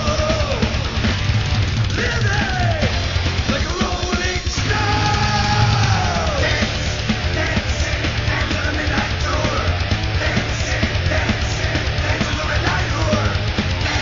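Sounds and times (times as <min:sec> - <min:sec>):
heavy metal band playing: 0:00.0 - 0:14.0
shouted vocals: 0:01.9 - 0:14.0.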